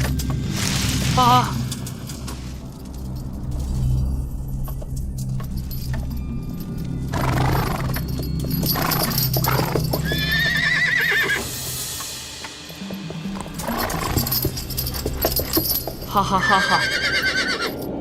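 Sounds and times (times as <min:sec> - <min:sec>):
film score music: 0:00.0 - 0:18.0
hoofbeats: 0:05.6 - 0:11.8, 0:12.4 - 0:17.9
horse whinnying: 0:07.1 - 0:07.9, 0:08.8 - 0:11.5, 0:13.6 - 0:14.4, 0:16.2 - 0:17.8.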